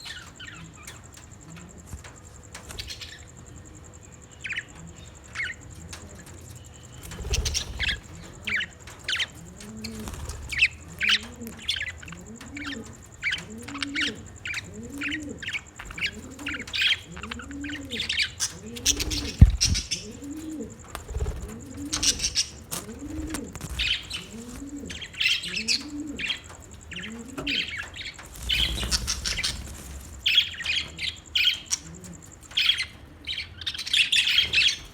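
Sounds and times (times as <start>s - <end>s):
budgies chirping and chattering: 2.1s - 34.9s
low cooing call: 7.3s - 32.3s.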